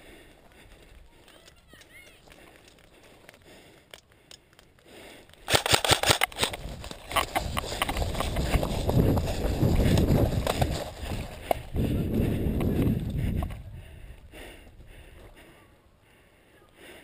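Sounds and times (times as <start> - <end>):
loud rustling and movement: 5.4 - 11.7
airsoft gun shots: 5.5 - 6.6.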